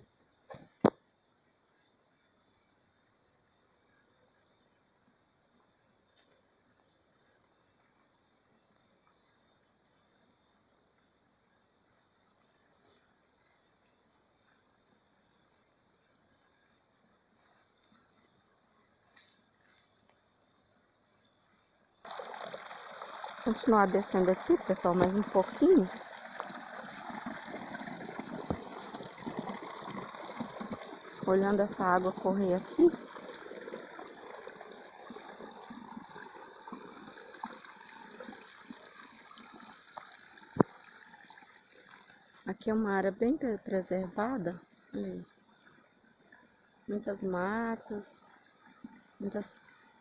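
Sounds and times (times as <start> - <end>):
insects trilling: 0.0 - 50.0
stream running over rocks: 22.0 - 50.0.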